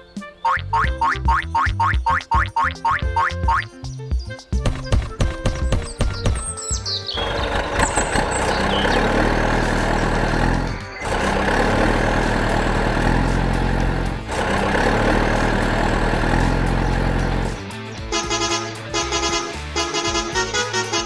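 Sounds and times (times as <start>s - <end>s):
heavy vehicle engine running: 4.7s - 21.0s.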